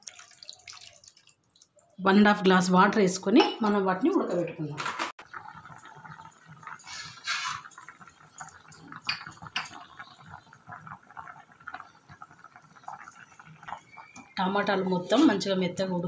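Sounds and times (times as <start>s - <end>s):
water splashing in a pot: 0.0s - 4.4s, 5.2s - 16.0s.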